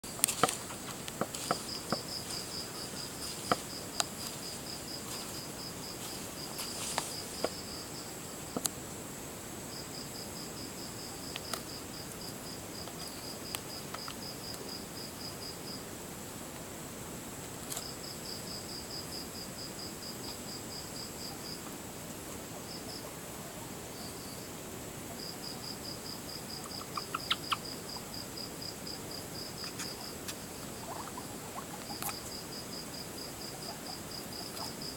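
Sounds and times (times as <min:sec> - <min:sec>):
guinea pig chirping: 0:26.7 - 0:27.7, 0:30.8 - 0:32.2.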